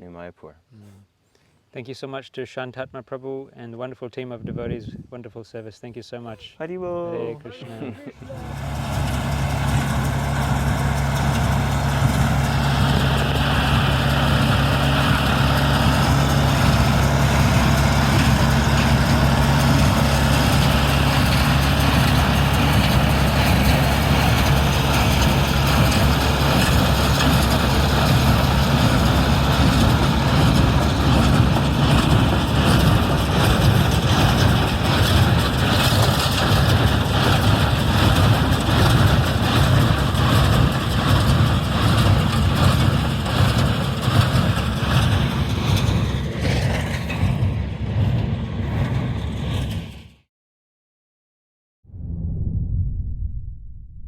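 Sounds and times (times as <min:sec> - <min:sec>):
vehicle engine running steadily: 0:08.2 - 0:50.1.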